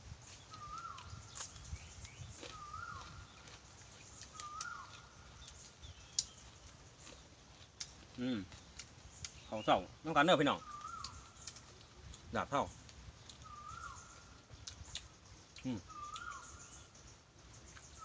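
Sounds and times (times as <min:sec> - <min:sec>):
bird whistled call: 0:00.5 - 0:01.6, 0:02.5 - 0:03.3, 0:04.3 - 0:05.0, 0:10.6 - 0:11.4, 0:13.4 - 0:14.3, 0:15.8 - 0:16.9.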